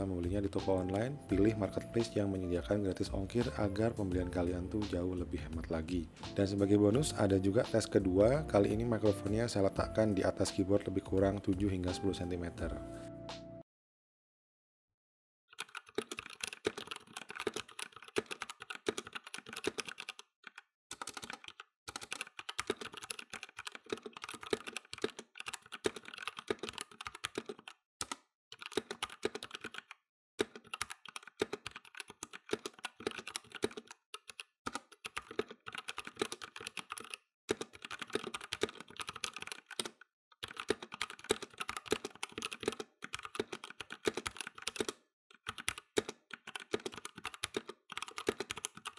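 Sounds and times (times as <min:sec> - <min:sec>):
mechanical keyboard typing: 0:15.5 - 0:48.9.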